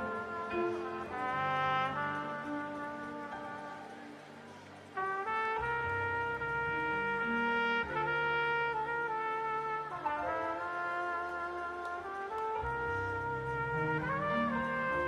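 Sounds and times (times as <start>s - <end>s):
trumpet playing long notes: 0.0s - 15.0s
low bass accompaniment: 5.1s - 15.0s.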